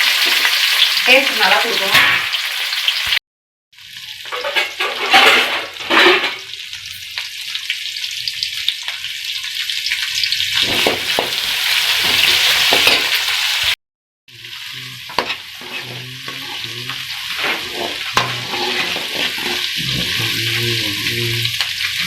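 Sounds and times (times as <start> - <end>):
onions sizzling in oil: 0.0 - 3.2, 3.8 - 22.0
stirring scrapes in a pan: 10.6 - 13.2, 14.7 - 22.0.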